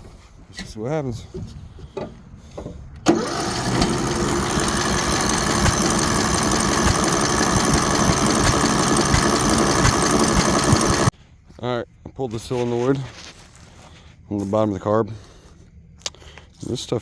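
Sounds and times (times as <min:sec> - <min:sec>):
mower engine cranking: 0:03.1 - 0:11.1.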